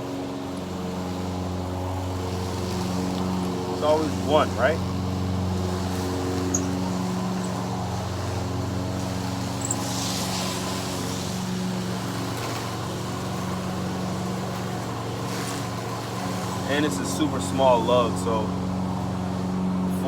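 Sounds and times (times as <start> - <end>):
lawn mower engine droning: 0.0 - 20.0.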